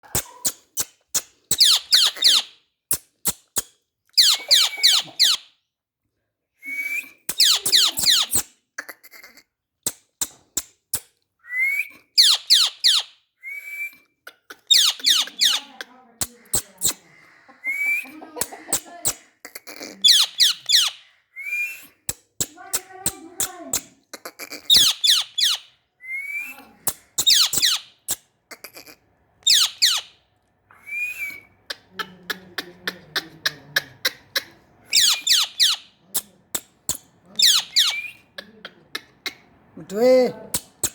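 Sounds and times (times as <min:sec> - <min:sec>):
parrot screech calls: 0:04.2 - 0:05.4, 0:28.8 - 0:30.2, 0:34.9 - 0:35.9.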